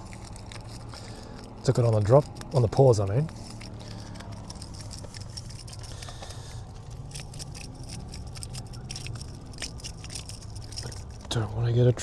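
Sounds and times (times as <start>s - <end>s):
fish being handled: 0.0s - 2.6s
hooks rattling: 0.0s - 11.3s.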